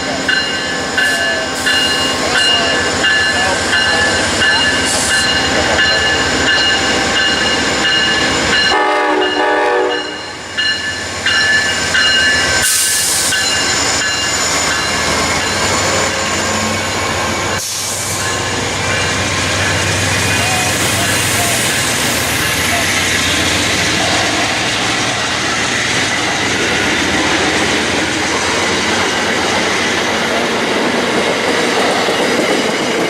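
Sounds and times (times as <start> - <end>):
train passing on tracks: 0.0 - 33.0
train horn blast: 8.7 - 10.4.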